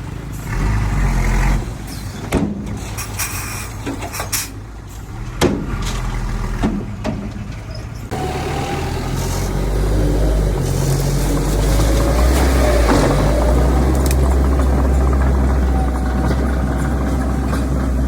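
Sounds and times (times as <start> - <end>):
heavy diesel engine running: 4.6 - 18.0.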